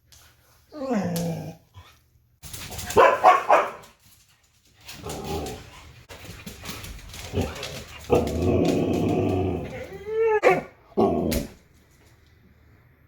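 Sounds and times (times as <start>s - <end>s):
dogs howling vocalizing: 8.3s - 10.4s.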